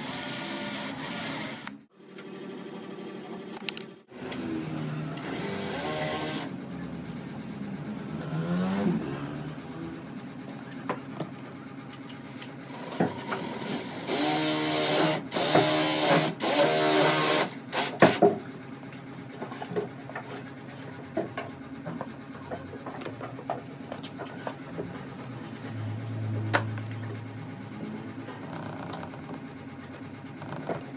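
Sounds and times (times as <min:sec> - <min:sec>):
power tool motor spinning: 0:00.0 - 0:01.8, 0:04.1 - 0:06.6, 0:08.1 - 0:09.8, 0:12.7 - 0:18.2, 0:27.8 - 0:29.5.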